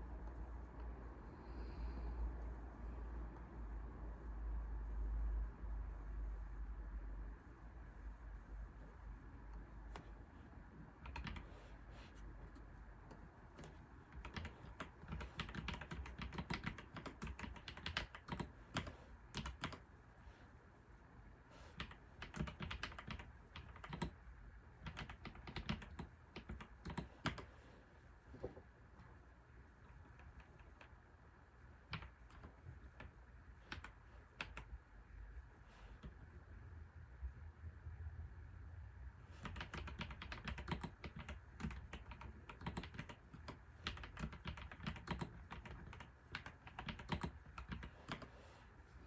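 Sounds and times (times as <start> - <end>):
faint low hum: 0.0 - 49.0
typing on computer keyboard: 11.0 - 11.5, 12.5 - 19.8, 21.8 - 24.2, 24.8 - 27.5, 31.9 - 33.1, 33.7 - 34.7, 39.4 - 48.3.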